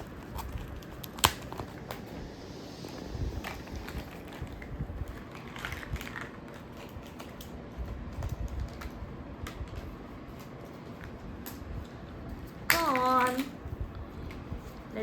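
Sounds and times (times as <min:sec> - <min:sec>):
plastic toy pieces clicking: 0:12.7 - 0:13.5.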